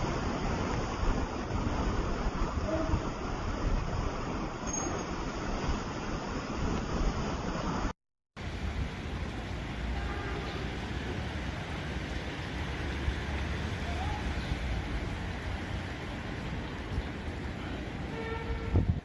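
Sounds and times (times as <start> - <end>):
strong wind buffeting microphone: 14.3 - 19.0.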